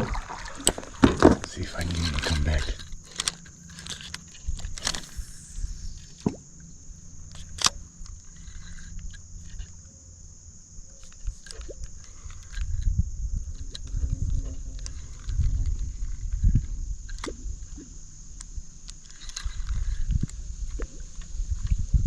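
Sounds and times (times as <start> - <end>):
high-pitched hum: 0.0 - 10.9.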